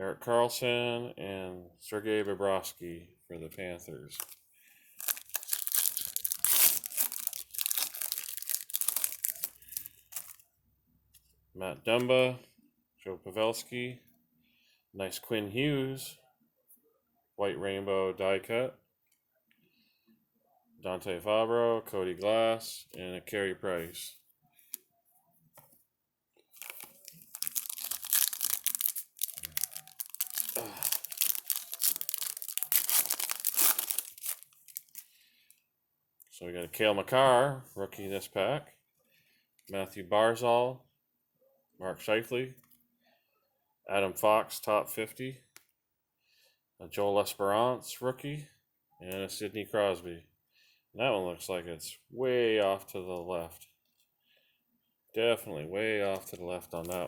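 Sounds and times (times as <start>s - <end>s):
wrapper tearing and crinkling: 5.0s - 10.4s, 26.6s - 35.1s.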